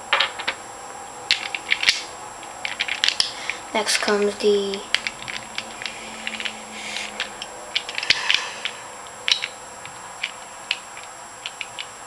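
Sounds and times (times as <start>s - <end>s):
plastic puzzle pieces clicking: 1.3s - 9.6s, 10.2s - 11.9s.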